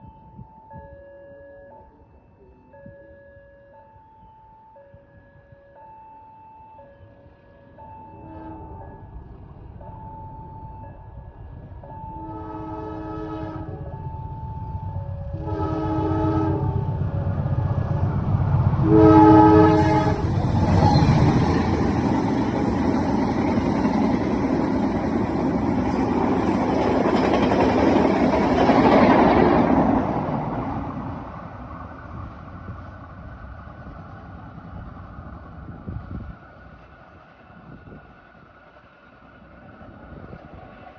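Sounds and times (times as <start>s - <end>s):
train horn blasts: 8.1s - 9.0s, 12.1s - 14.0s, 15.2s - 21.8s
train rushing and clattering past: 14.4s - 40.9s.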